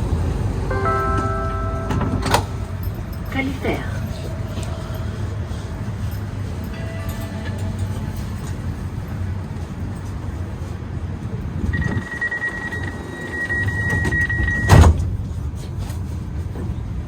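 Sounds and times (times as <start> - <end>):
tram low hum: 0.0 - 17.0
high door warning beep: 0.7 - 3.0, 11.8 - 14.9
sliding doors thudding shut: 12.5 - 15.2.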